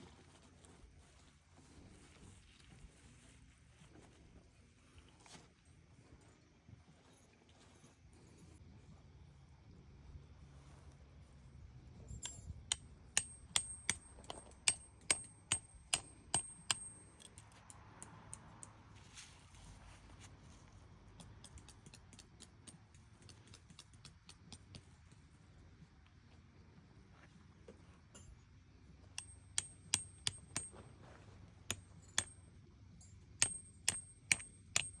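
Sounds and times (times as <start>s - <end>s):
tent stake being hammered: 12.7s - 17.4s, 29.2s - 30.9s, 33.3s - 35.0s.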